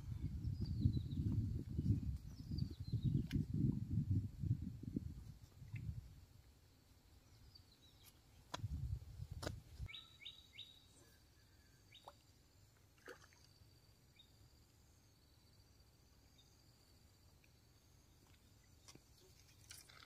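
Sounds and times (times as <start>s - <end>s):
faint bird chirps: 9.8s - 12.3s.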